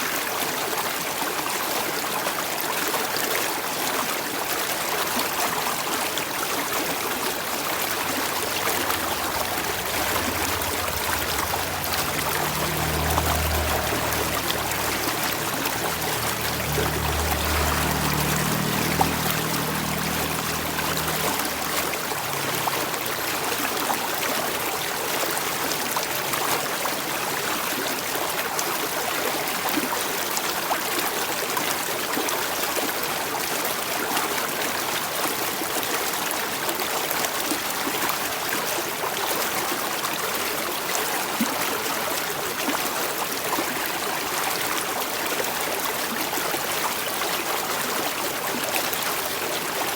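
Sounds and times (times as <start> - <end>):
stream water flowing: 0.0 - 49.9
low hum: 7.8 - 23.0.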